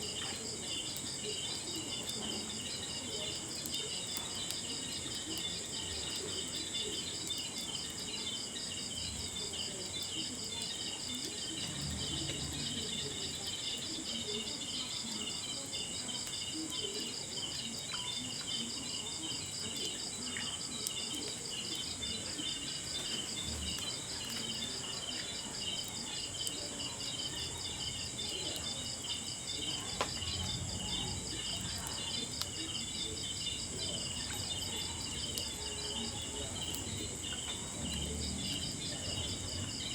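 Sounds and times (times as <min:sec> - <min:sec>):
campfire crackles: 0:00.0 - 0:39.9
insects chirping: 0:00.0 - 0:39.9.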